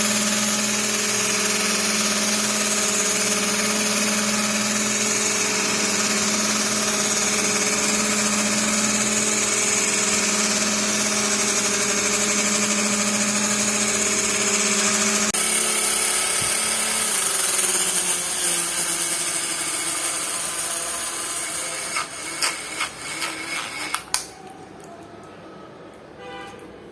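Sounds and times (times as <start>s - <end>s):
small motors and propellers buzzing: 0.0s - 24.2s
motor winding down: 0.0s - 24.3s.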